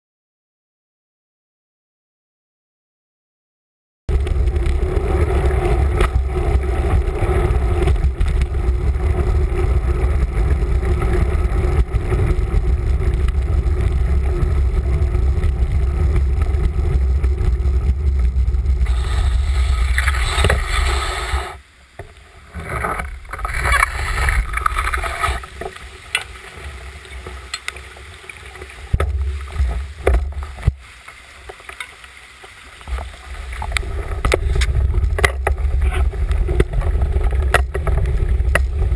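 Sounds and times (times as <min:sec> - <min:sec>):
heavy low rumble: 0:04.1 - 0:21.6, 0:32.9 - 0:38.9
flooding river rushing: 0:04.2 - 0:38.9.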